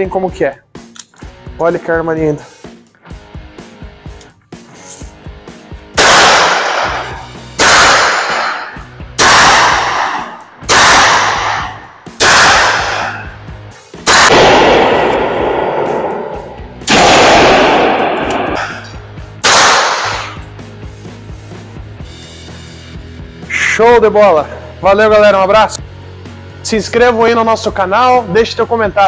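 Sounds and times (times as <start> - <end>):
revolver shots with echo: 6.0 - 13.4, 14.1 - 20.4.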